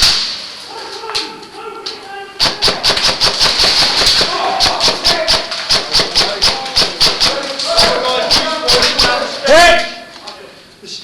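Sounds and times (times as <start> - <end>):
airsoft guns firing rapidly: 2.4 - 9.3.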